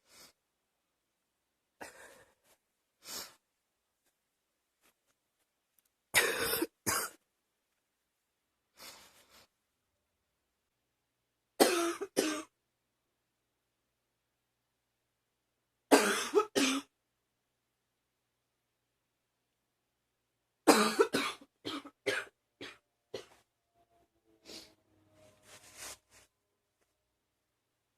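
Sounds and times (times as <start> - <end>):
girl coughing: 6.2 - 7.2, 11.6 - 12.5, 15.9 - 16.9, 20.7 - 23.4.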